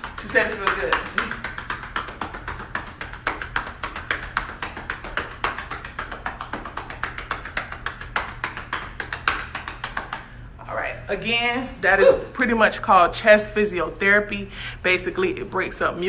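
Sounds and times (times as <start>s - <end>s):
hands patting on a back: 0.0s - 10.3s.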